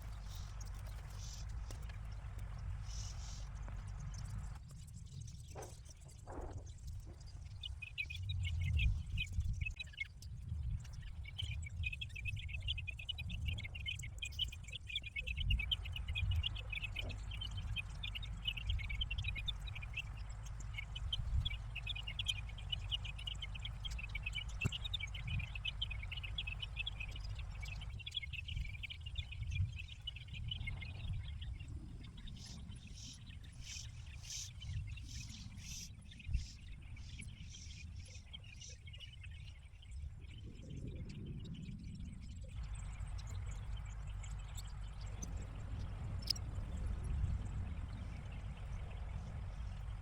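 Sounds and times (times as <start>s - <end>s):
low rumble: 40.3s - 50.0s.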